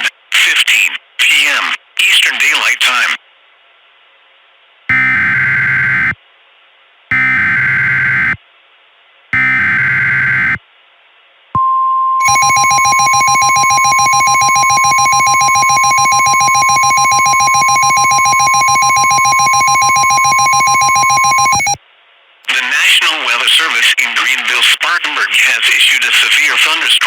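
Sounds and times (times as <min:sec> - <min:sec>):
steady buzzy alert tone: 0:04.9 - 0:06.2, 0:07.1 - 0:08.4, 0:09.4 - 0:10.6, 0:12.2 - 0:21.8
warbling digital data bursts: 0:12.2 - 0:21.8.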